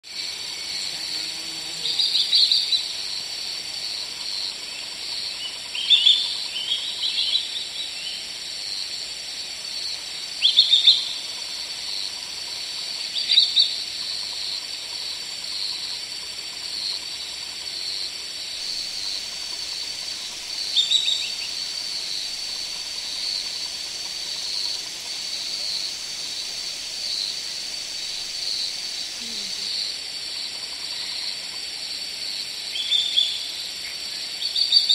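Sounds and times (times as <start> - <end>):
high insect drone: 0.0 - 34.9
bird chirps: 18.7 - 29.7.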